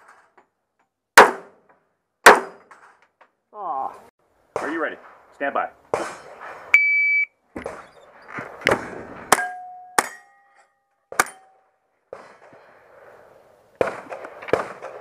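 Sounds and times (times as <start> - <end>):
gunshots: 1.2 - 1.6, 2.2 - 2.6, 13.8 - 15.0
shot timer beep: 6.8 - 7.3
steel targets ringing: 9.3 - 11.7.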